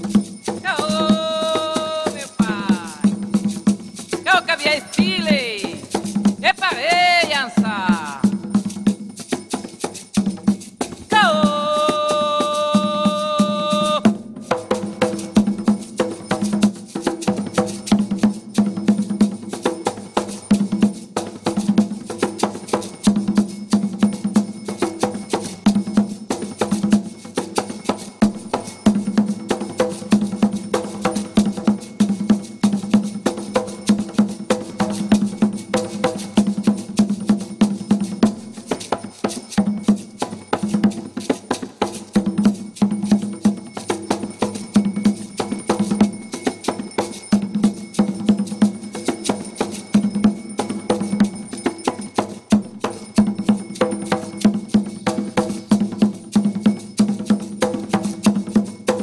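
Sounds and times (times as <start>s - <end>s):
hand drumming: 0.0s - 59.0s
high voice held note: 0.7s - 3.1s, 11.1s - 14.1s.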